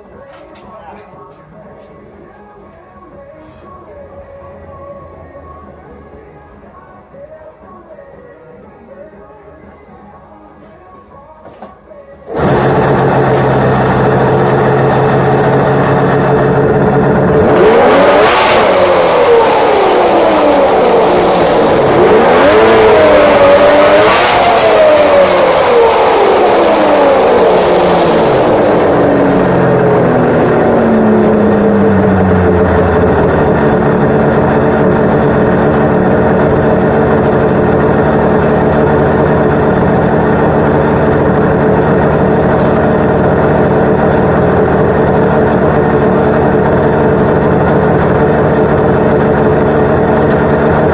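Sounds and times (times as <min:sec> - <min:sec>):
snowmobile engine idling and revving: 0:12.3 - 0:50.9.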